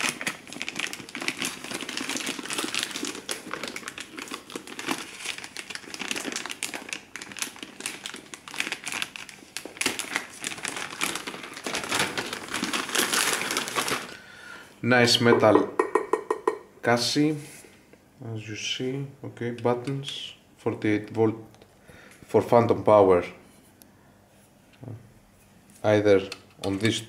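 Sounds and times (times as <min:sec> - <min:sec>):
plastic packaging crinkling: 0:00.0 - 0:14.2.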